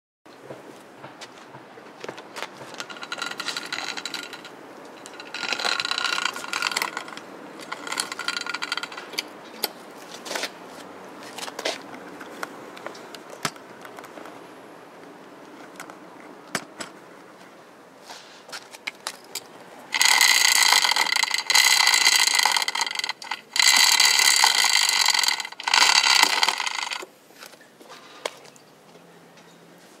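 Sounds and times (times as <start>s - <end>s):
drive chain scraping: 2.6s - 10.6s, 18.1s - 27.1s
scattered clicks: 18.8s - 27.1s.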